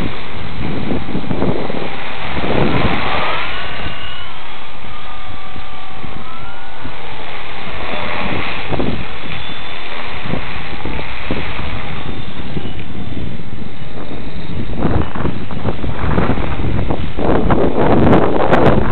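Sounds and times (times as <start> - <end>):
wind buffeting microphone: 0.0 - 18.9
rc helicopter motor whining: 1.7 - 13.4.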